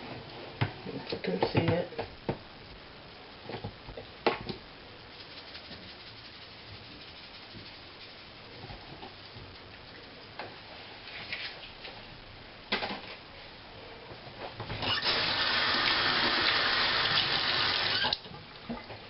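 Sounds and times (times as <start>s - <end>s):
kitchen tap running: 14.8s - 18.2s.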